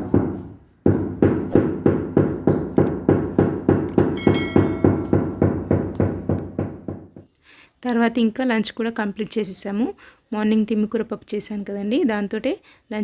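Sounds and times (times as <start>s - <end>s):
steady hammering: 0.0s - 7.3s
metallic ring: 4.2s - 5.1s.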